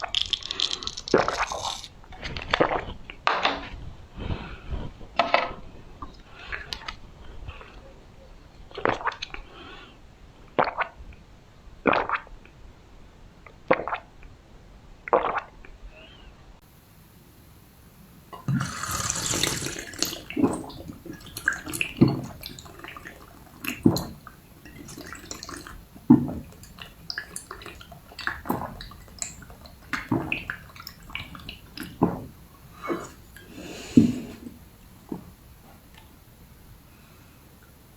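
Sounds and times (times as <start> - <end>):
rush of liquid: 16.8 - 35.2
person gulping and swallowing: 18.3 - 35.4.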